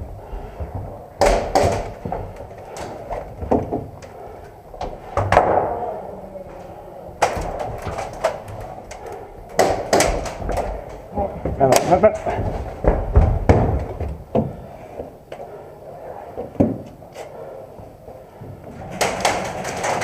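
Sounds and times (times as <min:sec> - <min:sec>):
sharp knocks and thuds: 0:00.7 - 0:04.0, 0:09.6 - 0:14.6.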